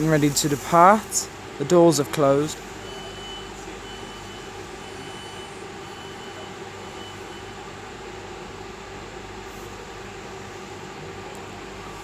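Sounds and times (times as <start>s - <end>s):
electric train hum: 0.0s - 12.0s
faint high beeps: 2.8s - 7.6s.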